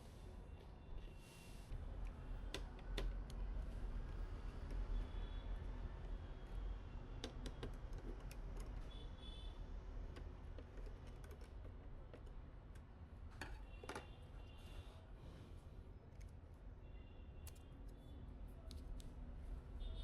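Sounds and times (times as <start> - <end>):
computer hardware clicks and taps: 7.2 - 8.9.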